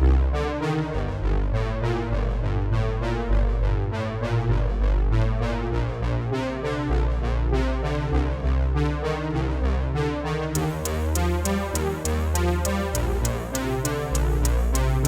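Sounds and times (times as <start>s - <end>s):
synthesizer and keyboard music: 0.0s - 15.0s
strong bass line: 10.6s - 15.0s.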